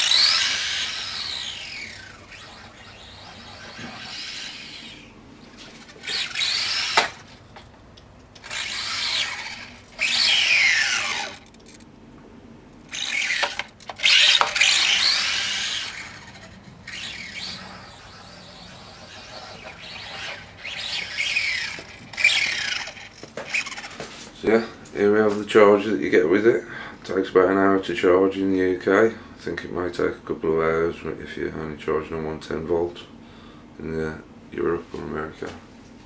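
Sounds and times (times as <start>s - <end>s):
squeaky scrapes: 0.0s - 7.4s, 14.0s - 24.5s.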